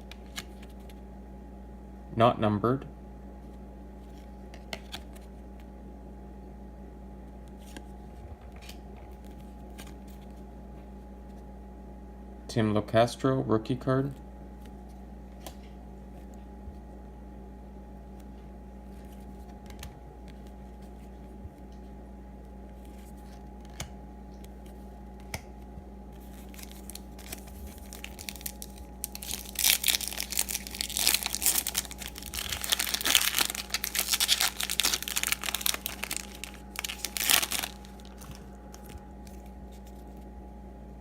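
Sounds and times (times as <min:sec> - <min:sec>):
foil wrapper crinkling and tearing: 0:26.2 - 0:40.0.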